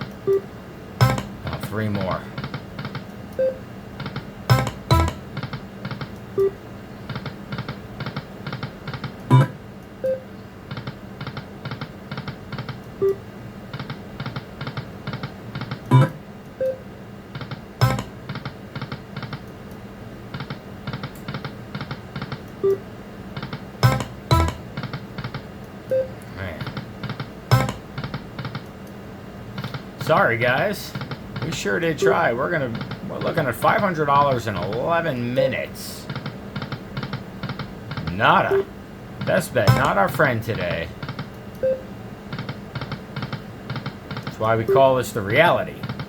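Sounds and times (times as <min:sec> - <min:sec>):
low steady hum: 0:00.0 - 0:46.0
plucked game tones: 0:01.0 - 0:01.4, 0:04.5 - 0:05.2, 0:09.3 - 0:10.2, 0:15.9 - 0:16.2, 0:17.8 - 0:18.2, 0:23.8 - 0:24.7, 0:27.5 - 0:27.9, 0:38.0 - 0:38.7, 0:39.6 - 0:40.0
slot machine knock: 0:01.0 - 0:01.4, 0:04.5 - 0:05.3, 0:09.3 - 0:09.6, 0:17.8 - 0:18.2, 0:23.8 - 0:24.7, 0:27.5 - 0:27.9, 0:39.6 - 0:40.1
slot machine reel ticks: 0:01.0 - 0:01.4, 0:04.5 - 0:05.2, 0:17.8 - 0:18.1, 0:23.8 - 0:24.7, 0:27.5 - 0:27.8, 0:39.7 - 0:40.0.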